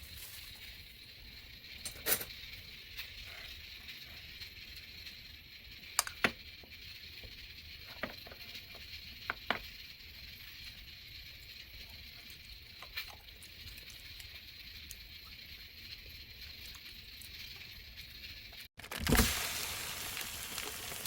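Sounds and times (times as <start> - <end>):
faint hiss: 19.1 - 21.0.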